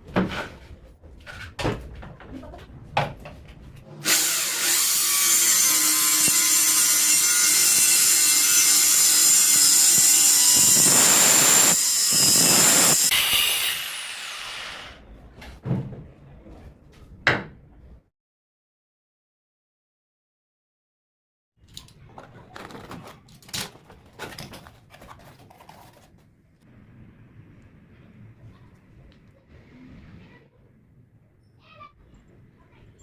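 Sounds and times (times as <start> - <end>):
electric drill cutting wood: 4.0 - 15.0.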